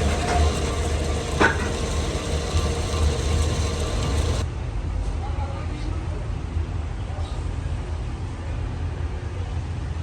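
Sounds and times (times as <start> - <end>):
machinery humming: 0.0 - 4.4.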